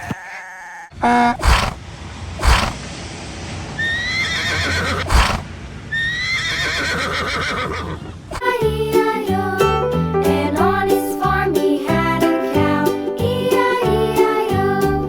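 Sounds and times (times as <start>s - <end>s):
horse whinnying: 0.0s - 1.8s, 2.4s - 2.8s, 3.8s - 8.4s.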